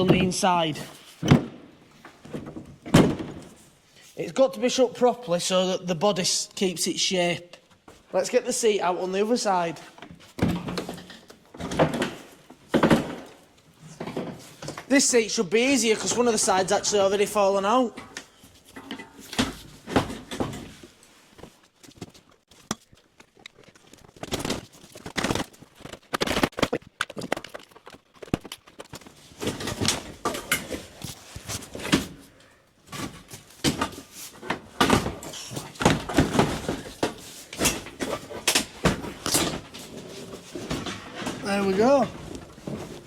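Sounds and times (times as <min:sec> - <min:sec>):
metal clunks and scraping: 0:18.0 - 0:21.0.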